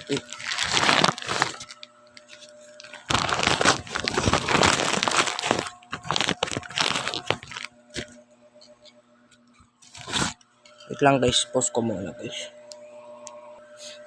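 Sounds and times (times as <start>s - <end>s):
plastic wrapping crinkling: 0.0s - 8.2s, 9.8s - 10.4s.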